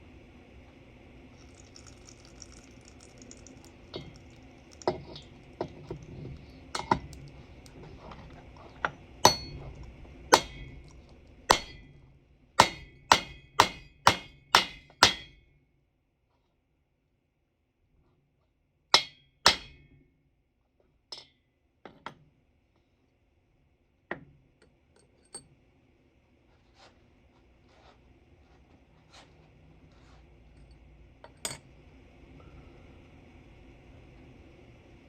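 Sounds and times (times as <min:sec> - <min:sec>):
ringing hammer strikes on metal: 0:09.2 - 0:09.6, 0:10.3 - 0:10.8, 0:11.5 - 0:12.0, 0:12.6 - 0:15.4, 0:19.0 - 0:19.9.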